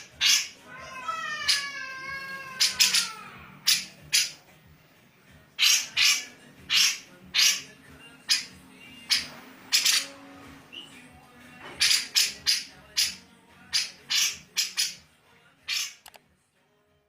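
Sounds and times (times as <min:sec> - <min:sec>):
bulbul harsh calls: 0:00.0 - 0:04.4, 0:05.6 - 0:10.9, 0:11.8 - 0:15.0.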